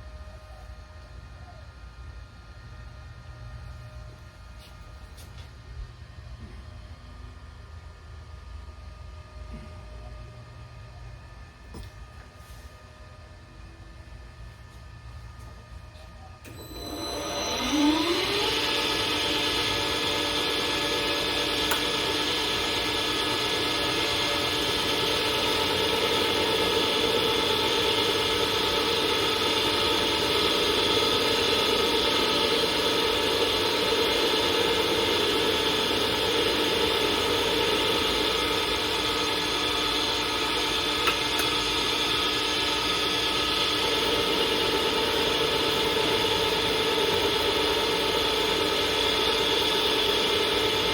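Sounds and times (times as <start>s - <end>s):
lathe motor whine: 16.4s - 50.9s.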